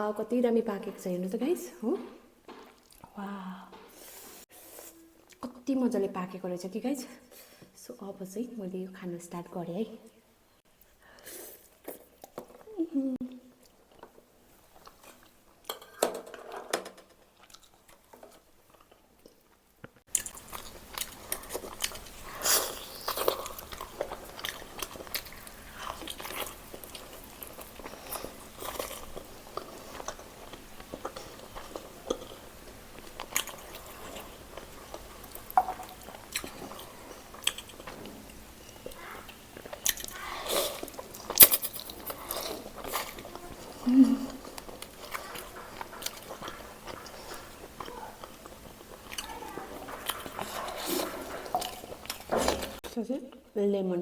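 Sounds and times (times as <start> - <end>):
person chewing food: 2.4 - 5.5, 13.3 - 15.7, 17.2 - 52.8.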